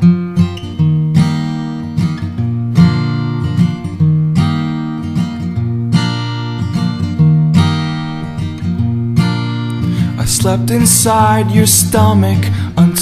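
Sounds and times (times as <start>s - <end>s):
acoustic guitar strumming chords: 0.0s - 13.0s.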